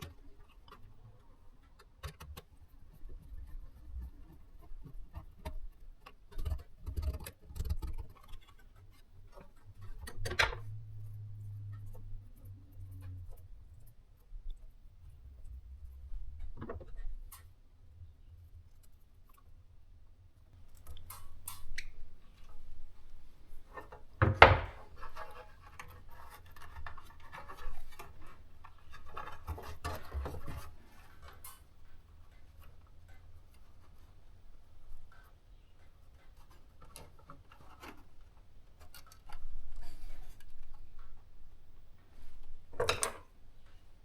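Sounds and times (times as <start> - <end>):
handling rubbing and scraping: 0.0 - 17.1, 20.6 - 44.0.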